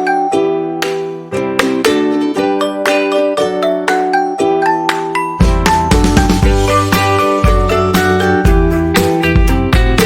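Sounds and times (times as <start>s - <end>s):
background music with heavy bass: 5.4s - 10.0s.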